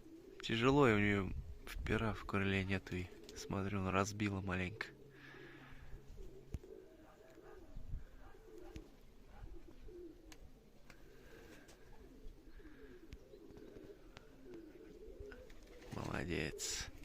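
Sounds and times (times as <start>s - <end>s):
pigeons cooing: 0.0s - 17.0s
faint clicks: 13.1s - 14.7s.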